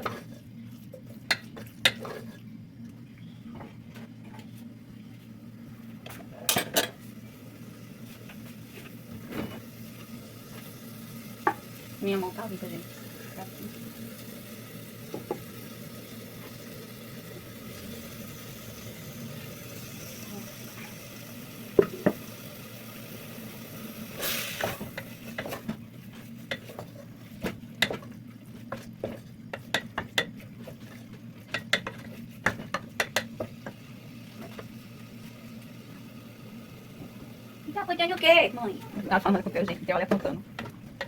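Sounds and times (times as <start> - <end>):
meat sizzling in a pan: 7.6 - 26.7
utensil knocking against pan: 31.5 - 33.5.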